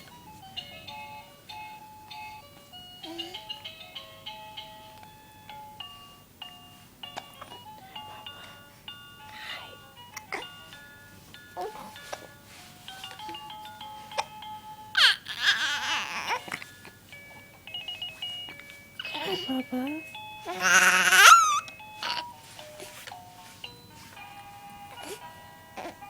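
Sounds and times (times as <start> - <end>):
baby vocalizing: 9.3 - 10.6, 15.0 - 16.7, 20.4 - 22.3
simple chiming tune: 17.1 - 25.9.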